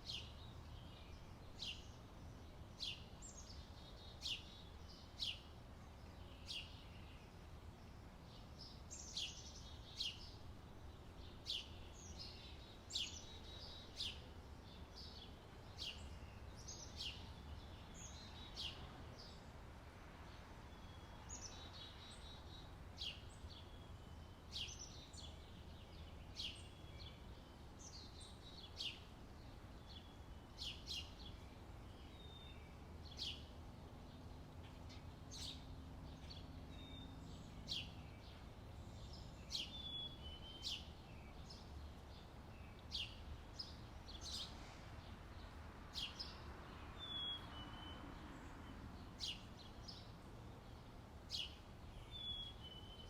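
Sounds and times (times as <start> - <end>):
birds chirping: 20.3 - 53.0.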